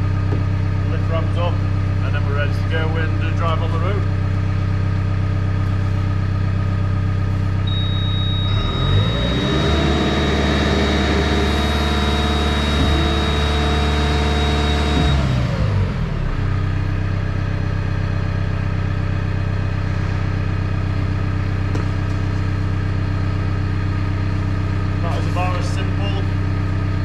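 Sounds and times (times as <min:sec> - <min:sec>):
diesel engine revving and idling: 0:00.0 - 0:27.0
hydraulic whine: 0:05.6 - 0:17.6.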